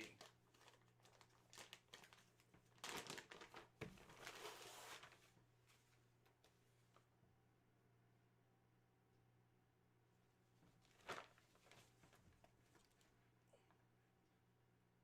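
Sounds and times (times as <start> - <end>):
crinkling and rustling of packaging: 0.0 - 6.6, 10.6 - 13.2.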